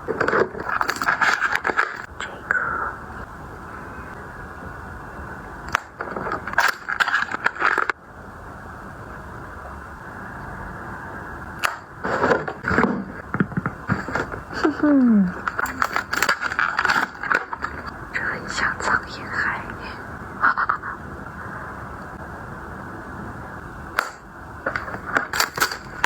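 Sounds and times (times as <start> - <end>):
packaging crinkling and scraping: 0.1 - 2.1, 6.0 - 8.0, 12.0 - 14.5, 15.3 - 17.9, 24.6 - 26.0.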